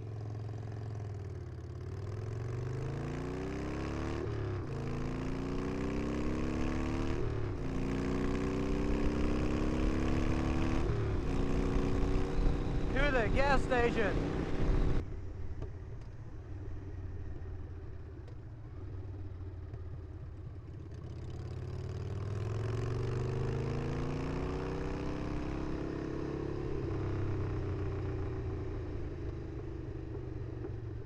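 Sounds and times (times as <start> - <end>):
motorcycle engine running: 4.3 - 23.8.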